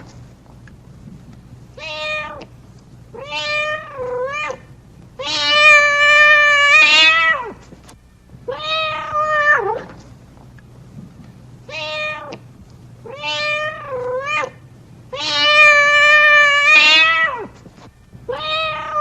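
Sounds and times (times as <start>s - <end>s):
cat meowing: 1.8s - 2.5s, 3.2s - 7.6s, 8.5s - 9.9s, 11.7s - 12.4s, 13.0s - 17.6s, 18.3s - 19.0s.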